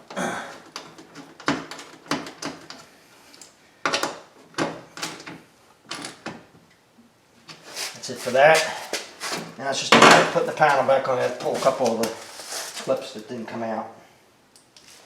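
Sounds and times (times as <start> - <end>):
hard parts clicking into place: 0.5 - 6.4.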